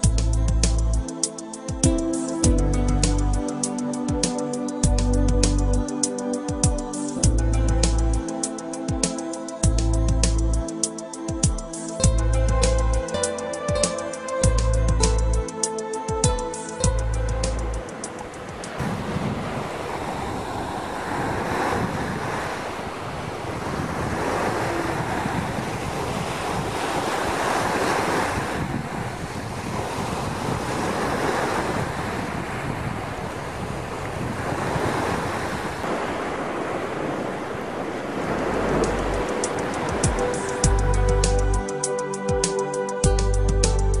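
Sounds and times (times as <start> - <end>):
sea waves washing onto shore: 15.4 - 41.6.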